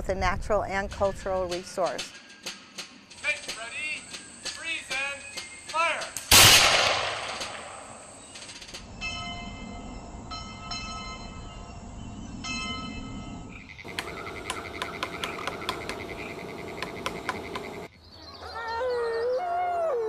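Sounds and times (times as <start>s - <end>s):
chorus of animal calls: 13.5s - 20.0s
sharp clicks: 13.9s - 17.9s.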